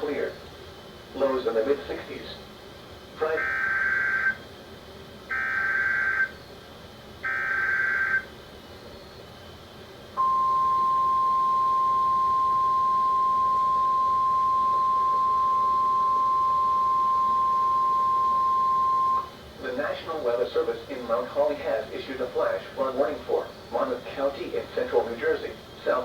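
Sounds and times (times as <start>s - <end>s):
digital header bursts: 3.2s - 4.4s
steady warning alarm tone: 3.2s - 4.4s, 5.3s - 6.4s, 7.2s - 8.4s, 10.2s - 19.4s.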